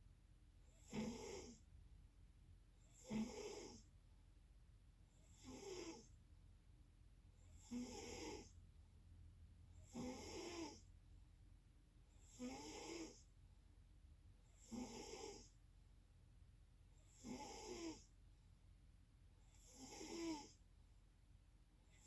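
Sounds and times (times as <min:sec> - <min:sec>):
quiet snoring: 0:00.6 - 0:01.8, 0:02.8 - 0:04.0, 0:05.1 - 0:06.2, 0:07.4 - 0:08.6, 0:09.7 - 0:11.0, 0:12.1 - 0:13.3, 0:14.4 - 0:15.6, 0:17.0 - 0:18.2, 0:19.4 - 0:20.7.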